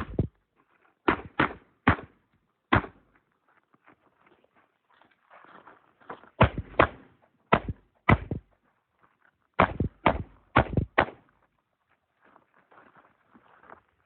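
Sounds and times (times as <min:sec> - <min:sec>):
revolver gunshots with echo: 0:01.1 - 0:03.0, 0:06.4 - 0:08.4, 0:09.6 - 0:11.2.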